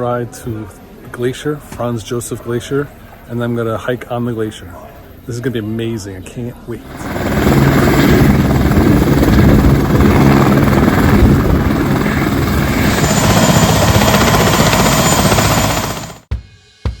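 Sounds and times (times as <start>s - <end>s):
helicopter rotor and turbine: 6.8s - 16.3s.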